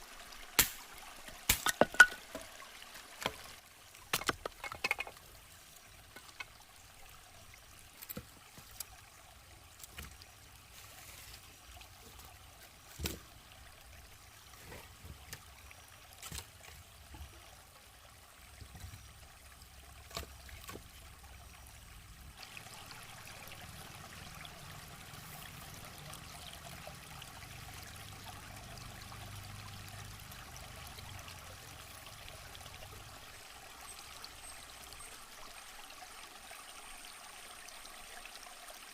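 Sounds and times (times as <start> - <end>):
flowing water: 0.0 - 38.9
water trickling: 0.0 - 38.9
sharp clicks and knocks: 4.1 - 5.2.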